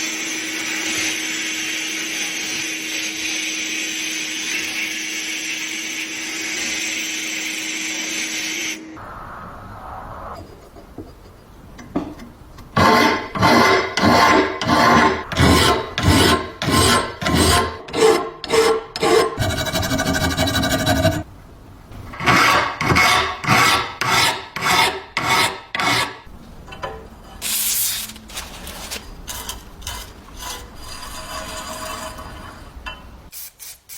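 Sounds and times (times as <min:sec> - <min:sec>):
hand filing strokes: 0:12.8 - 0:21.2, 0:22.2 - 0:26.2, 0:28.7 - 0:32.5.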